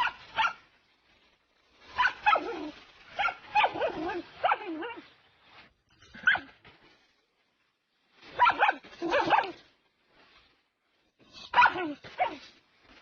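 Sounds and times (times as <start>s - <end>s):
dog barking: 0.0s - 0.6s, 2.0s - 5.0s, 8.4s - 9.6s, 11.5s - 12.4s.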